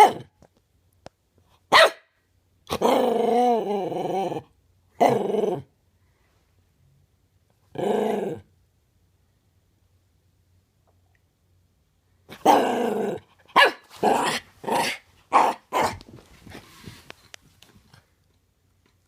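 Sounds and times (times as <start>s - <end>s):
dog barking and growling: 0.0s - 0.4s, 1.7s - 2.1s, 2.7s - 5.7s, 7.7s - 8.5s, 12.3s - 16.3s.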